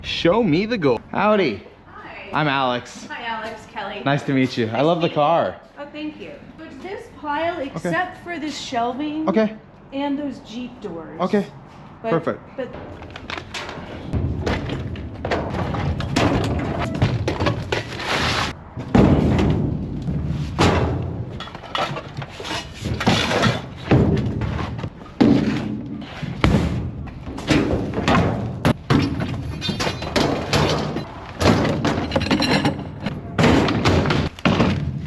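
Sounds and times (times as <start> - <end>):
junk thudding and banging: 12.7 - 35.0
scraping and rattling: 12.8 - 35.0.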